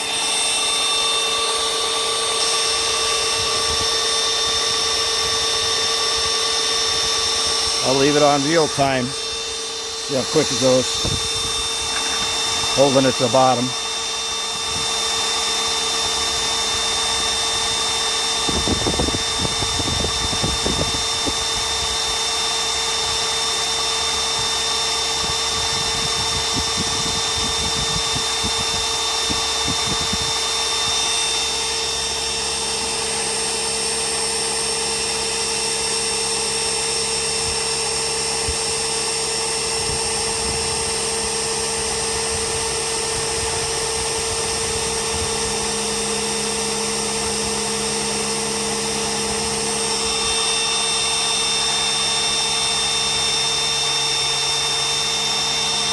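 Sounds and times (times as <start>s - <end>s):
drill whining at full speed: 0.0s - 55.9s.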